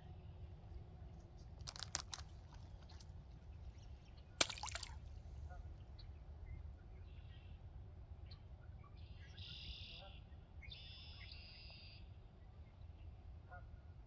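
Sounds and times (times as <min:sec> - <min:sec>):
small splashy clicks: 0:01.6 - 0:03.1, 0:04.4 - 0:05.0
sharp splash in water: 0:04.4 - 0:05.0
faint bird chirps: 0:09.0 - 0:12.1.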